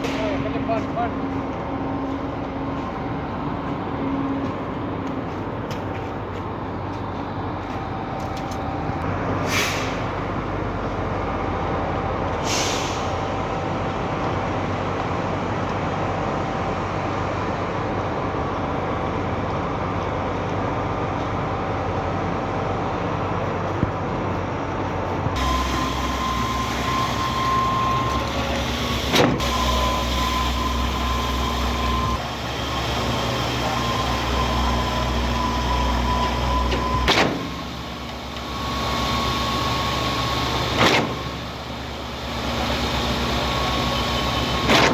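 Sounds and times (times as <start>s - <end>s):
diesel truck engines running: 0.0s - 44.9s
steady machine whine: 25.4s - 44.8s.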